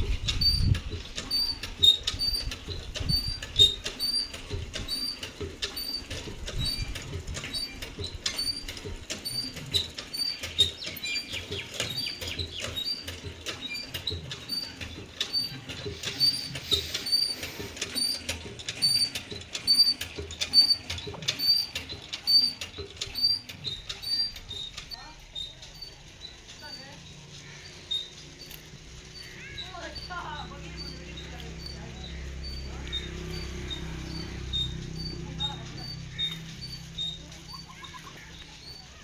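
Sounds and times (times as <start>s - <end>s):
small bird chirping: 8.4s - 18.2s, 19.7s - 39.0s.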